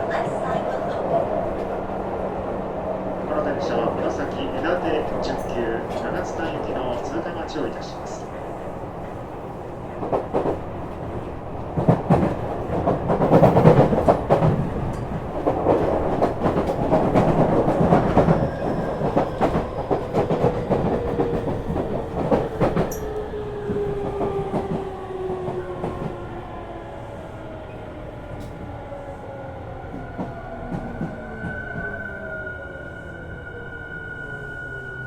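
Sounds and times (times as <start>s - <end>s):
train running rumble: 0.0s - 26.2s.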